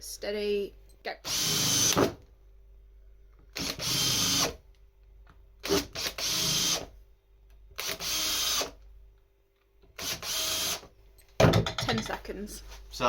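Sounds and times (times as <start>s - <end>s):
cordless drill whining: 1.3s - 2.0s, 3.6s - 4.6s, 5.7s - 6.9s, 7.8s - 8.8s, 10.0s - 10.9s.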